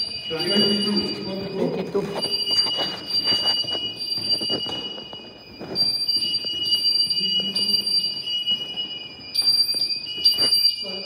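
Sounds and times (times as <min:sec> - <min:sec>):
fire alarm shrill tones: 0:00.0 - 0:11.0.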